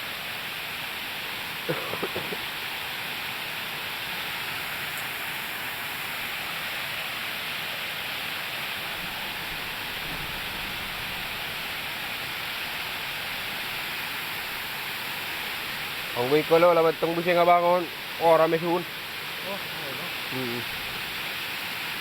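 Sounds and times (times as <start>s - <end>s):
rush of falling water: 0.0s - 22.0s.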